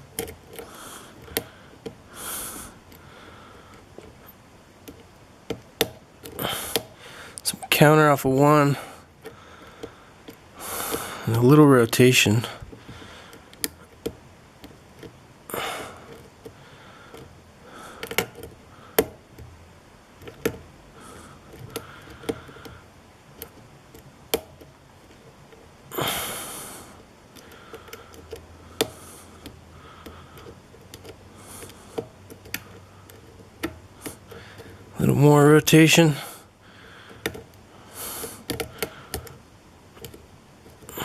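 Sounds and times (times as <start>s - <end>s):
lock pick scraping: 0.0s - 7.0s, 16.0s - 19.6s, 27.3s - 34.9s.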